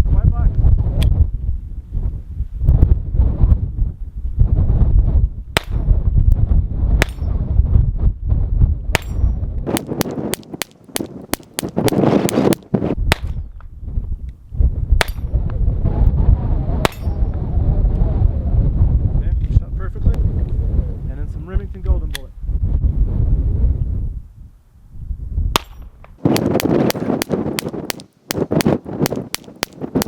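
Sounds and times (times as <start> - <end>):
wind buffeting microphone: 0.0 - 30.0
pistol shots: 5.6 - 5.9, 7.0 - 7.3, 9.0 - 13.4, 25.6 - 30.0.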